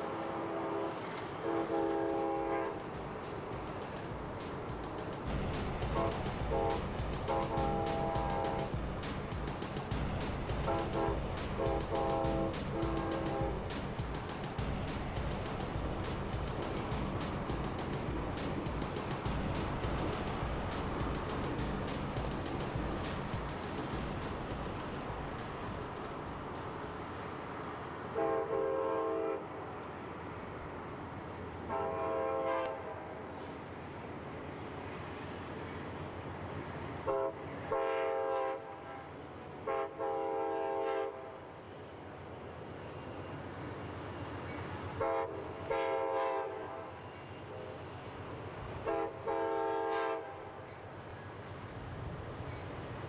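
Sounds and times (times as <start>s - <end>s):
locomotive air horn blasts: 0.0s - 2.9s, 5.9s - 8.7s, 10.6s - 13.7s, 28.1s - 29.6s, 31.7s - 33.1s, 37.0s - 41.5s, 44.9s - 47.8s, 48.8s - 50.7s
moving train rumble: 0.0s - 53.0s.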